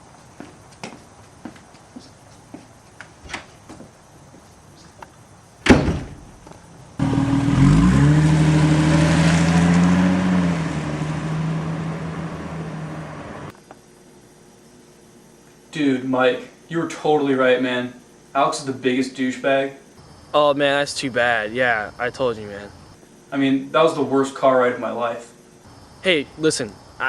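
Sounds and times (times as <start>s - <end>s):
light footsteps: 0.2s - 5.2s, 6.1s - 7.3s
car door slamming: 5.6s - 6.5s
car engine revving and driving away: 7.0s - 13.5s.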